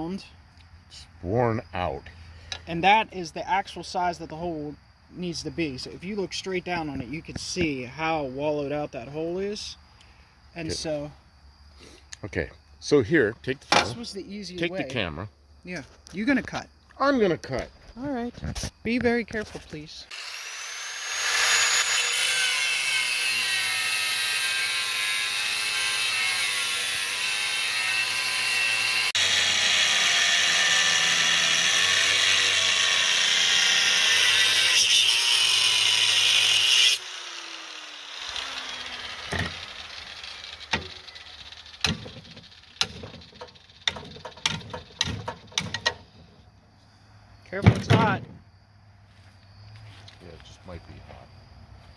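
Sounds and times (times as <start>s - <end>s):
light metal clanks and knocks: 13.7s - 14.1s, 41.9s - 46.4s
power tool cutting steel: 20.1s - 46.0s.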